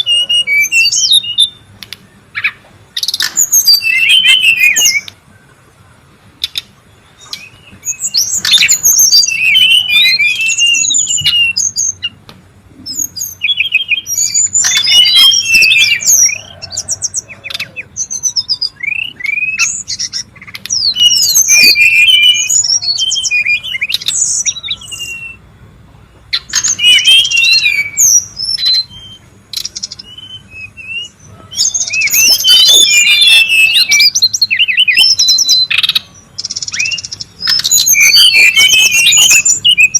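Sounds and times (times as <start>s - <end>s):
bird calling rapid high chirps: 0.0s - 5.5s, 6.4s - 12.2s, 12.8s - 25.5s, 26.3s - 39.9s.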